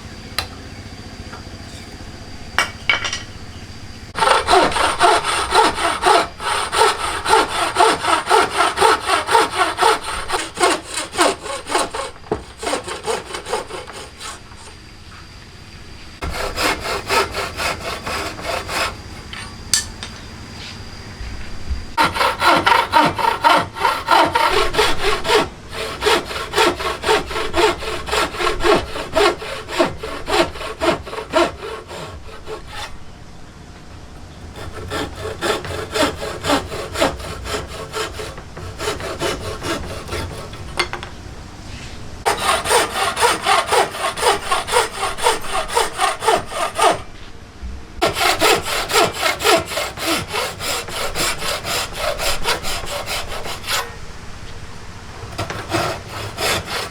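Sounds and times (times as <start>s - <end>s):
hand saw cutting wood: 4.1s - 14.8s, 16.2s - 19.9s, 22.0s - 33.0s, 34.5s - 40.9s, 41.8s - 47.1s, 48.0s - 54.0s, 55.3s - 56.9s.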